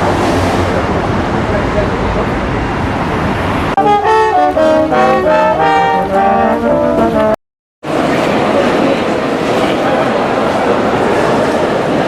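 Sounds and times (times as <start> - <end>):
brass instruments playing a tune: 3.8 - 7.4.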